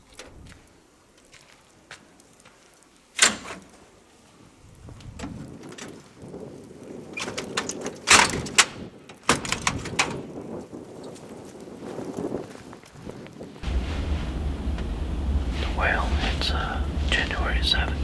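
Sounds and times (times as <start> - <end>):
low rumble: 13.6 - 18.0.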